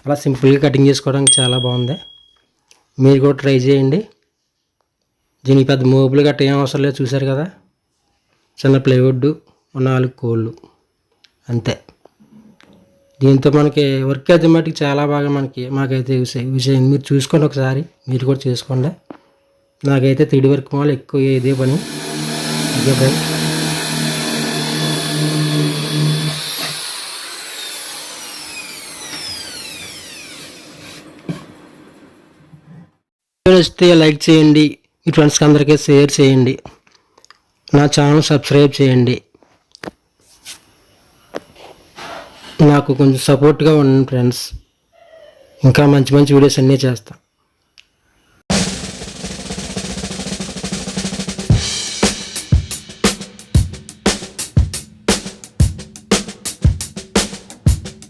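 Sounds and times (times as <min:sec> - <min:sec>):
electric jigsaw motor running: 0:21.4 - 0:31.0
heavy drum hits: 0:48.5 - 0:58.0
snare drum roll: 0:48.5 - 0:58.0.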